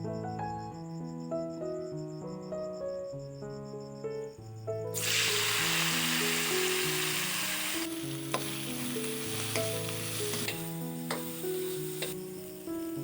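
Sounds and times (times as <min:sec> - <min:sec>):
food sizzling in hot oil: 0:05.0 - 0:13.0.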